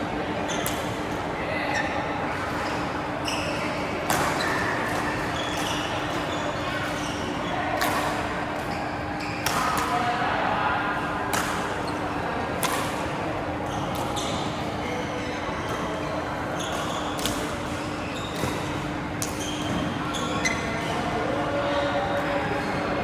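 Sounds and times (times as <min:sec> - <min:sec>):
racket hitting shuttlecock: 0:12.6 - 0:13.0.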